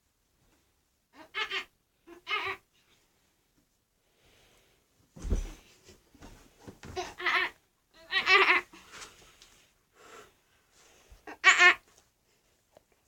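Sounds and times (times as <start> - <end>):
girl imitating monkey calls: 1.2 - 2.6, 7.0 - 8.7, 11.3 - 11.8.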